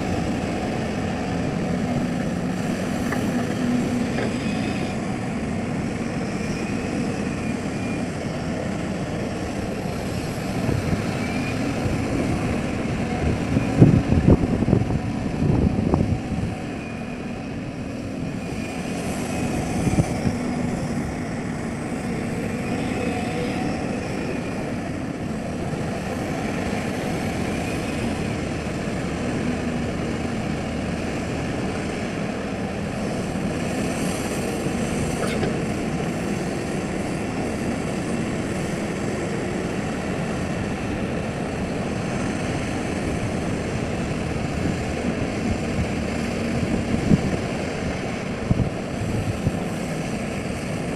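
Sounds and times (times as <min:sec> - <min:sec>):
hydraulic whine: 0:00.0 - 0:32.0.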